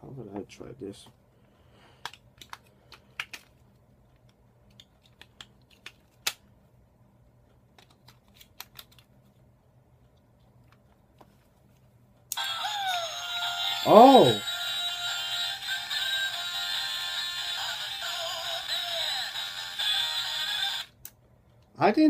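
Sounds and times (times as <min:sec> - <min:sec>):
toy playing electronic song: 0:12.3 - 0:20.9.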